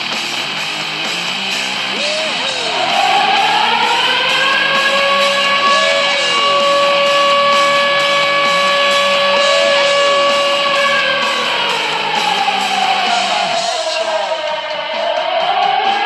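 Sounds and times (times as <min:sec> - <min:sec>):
rock song playing: 0:00.0 - 0:16.0
goal horn blast: 0:01.3 - 0:13.8.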